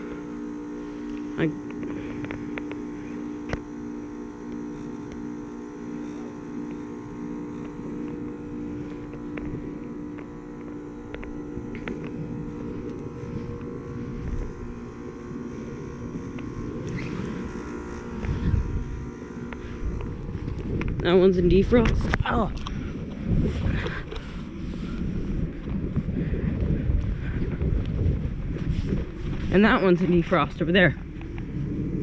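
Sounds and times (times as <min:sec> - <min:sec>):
heat pump compressor hum: 0:00.0 - 0:32.0
low rumble: 0:11.0 - 0:32.0.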